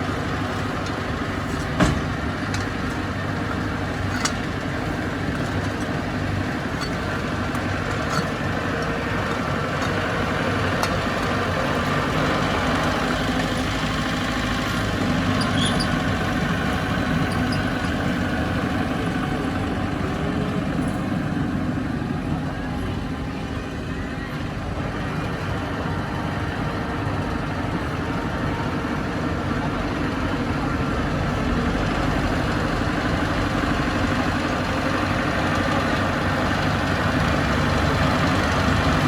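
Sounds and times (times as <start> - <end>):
diesel machinery running: 0.0 - 39.0
sharp clicks and knocks: 0.1 - 12.0.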